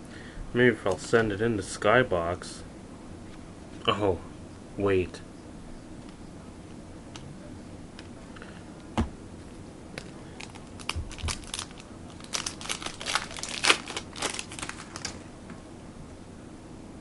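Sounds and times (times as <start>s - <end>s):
wrapper tearing and crinkling: 10.4s - 15.3s.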